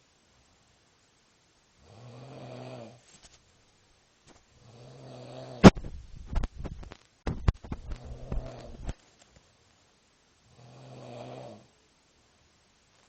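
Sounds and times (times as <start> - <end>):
man snoring: 1.9 - 3.0, 10.6 - 11.7
loud sharp knock: 5.6 - 6.5.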